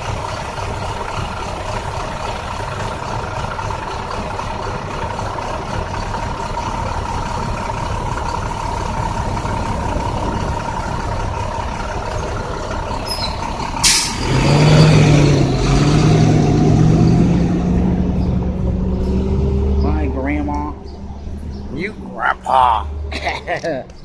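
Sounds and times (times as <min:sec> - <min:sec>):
misfiring bus engine: 0:00.0 - 0:24.0
air brake hiss: 0:13.8 - 0:14.2.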